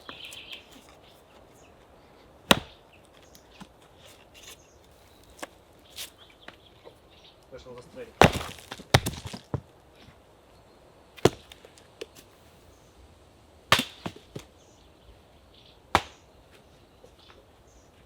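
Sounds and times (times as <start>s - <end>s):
axe chopping wood: 2.5s - 2.8s, 8.2s - 9.6s, 11.2s - 11.6s, 13.7s - 14.5s, 15.9s - 16.2s
wood pieces falling: 8.1s - 9.7s.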